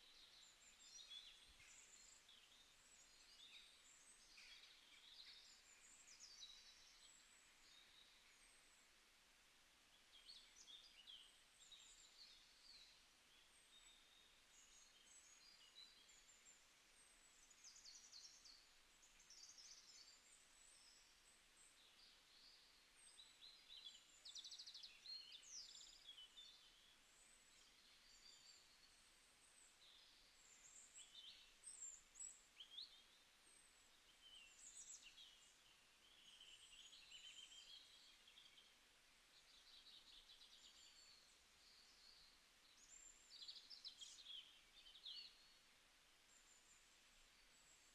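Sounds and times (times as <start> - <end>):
light background hiss: 0.0 - 47.9.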